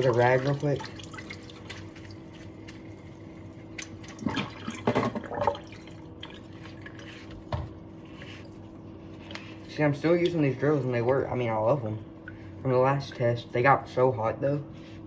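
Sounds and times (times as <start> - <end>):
liquid dripping: 0.0 - 7.5
faint steady hum: 0.0 - 15.0.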